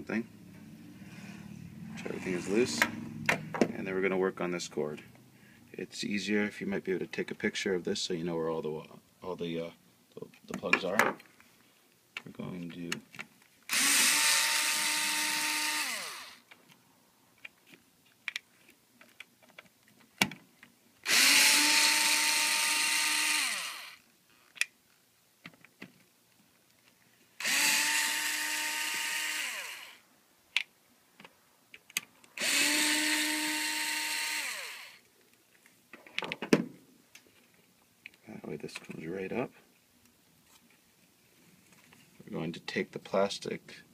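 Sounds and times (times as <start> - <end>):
electric screwdriver running: 13.7 - 16.4, 21.0 - 24.0, 27.4 - 30.0, 32.4 - 35.0.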